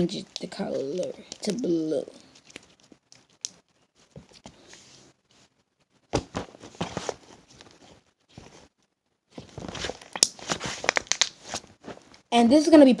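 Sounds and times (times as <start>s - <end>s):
slime squishing and crackling: 0.0s - 3.7s, 9.4s - 11.6s.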